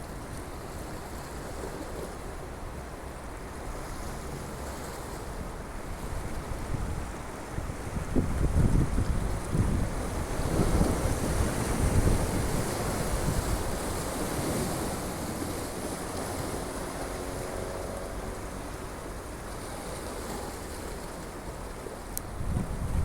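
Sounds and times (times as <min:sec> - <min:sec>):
sea surf washing on shore: 0:00.0 - 0:23.0
wind buffeting microphone: 0:06.0 - 0:17.6, 0:22.2 - 0:23.0.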